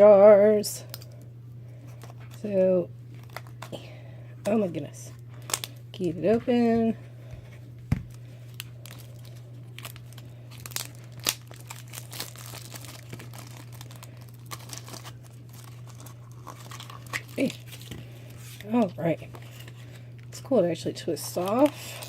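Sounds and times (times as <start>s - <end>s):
plastic packaging crinkling: 3.1s - 3.8s, 5.3s - 6.3s, 7.9s - 20.4s, 21.1s - 22.0s.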